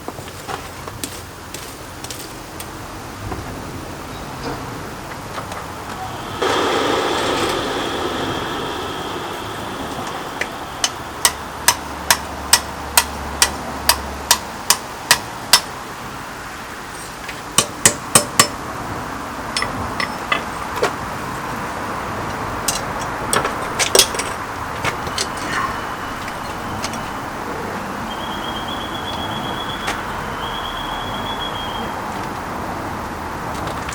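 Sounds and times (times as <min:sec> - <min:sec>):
steady rushing noise: 0:04.6 - 0:29.0
hammer striking metal on anvil: 0:07.5 - 0:15.7, 0:17.6 - 0:18.6.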